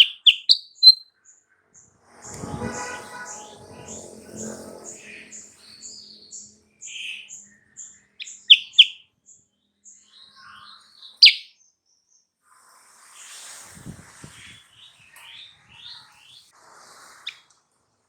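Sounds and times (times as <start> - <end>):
loud sharp bird calls: 0.0 - 1.0, 2.4 - 9.1, 10.2 - 11.5
bird chirping: 0.0 - 12.2.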